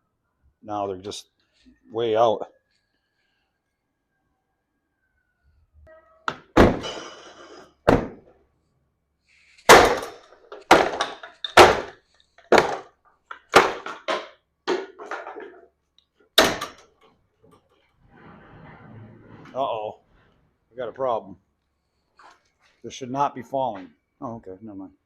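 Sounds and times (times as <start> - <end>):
heavy knocks with rattle: 7.9 - 8.2.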